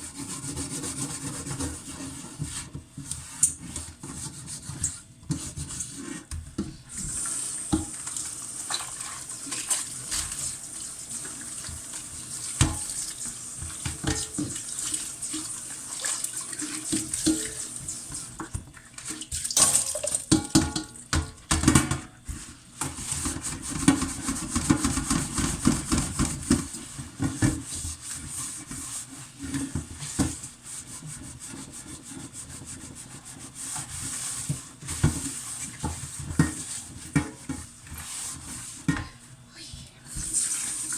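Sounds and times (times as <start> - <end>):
tap water running: 0.2 - 30.4, 39.8 - 40.9
pots knocking and clattering: 12.6 - 14.7, 16.6 - 27.7, 34.8 - 38.0.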